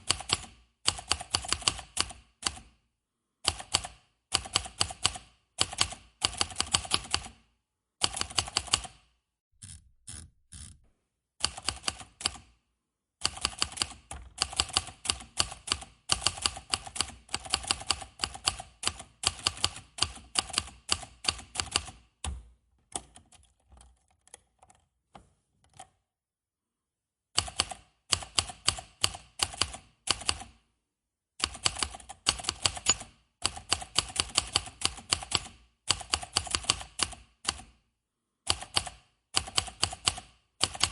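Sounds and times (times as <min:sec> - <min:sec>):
typewriter keystroke clacks: 0:00.0 - 0:02.7, 0:03.5 - 0:07.4, 0:11.4 - 0:12.5, 0:13.2 - 0:24.8, 0:27.4 - 0:30.5, 0:31.4 - 0:37.6, 0:38.5 - 0:40.9.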